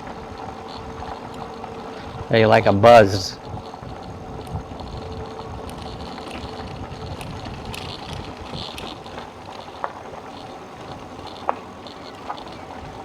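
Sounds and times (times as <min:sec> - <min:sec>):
electric bike rolling on dirt road: 0:00.0 - 0:13.0.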